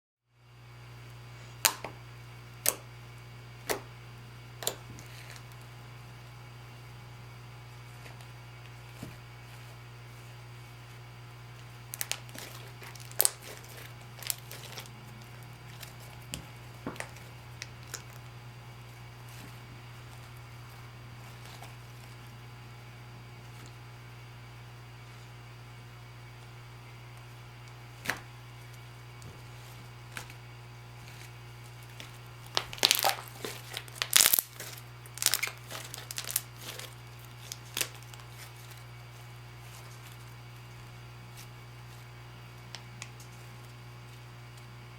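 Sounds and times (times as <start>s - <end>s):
steady low hum: 0.3s - 44.9s
slime squished by hand: 31.9s - 38.8s.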